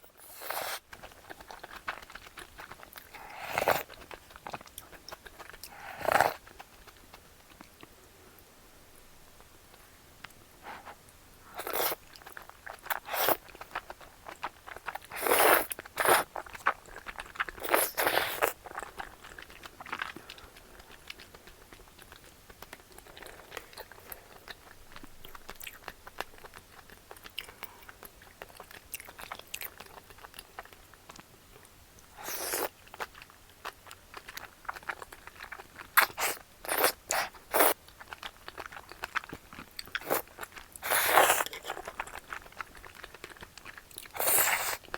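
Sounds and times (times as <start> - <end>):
person chewing and biting: 32.2 - 44.9.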